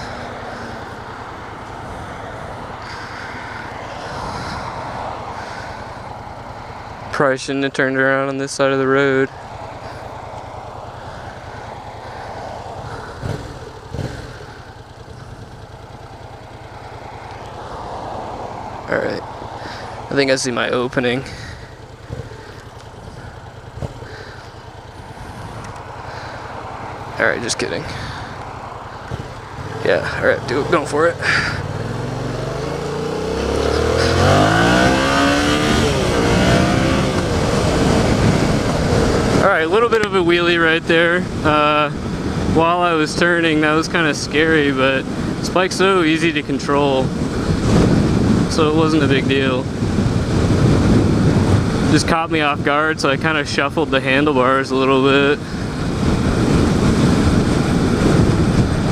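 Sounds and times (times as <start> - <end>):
wind rushing over microphone: 0.0 - 7.2, 9.2 - 58.9
motorcycle engine idling: 0.0 - 58.9
low thumps: 22.0 - 24.3, 27.9 - 39.4.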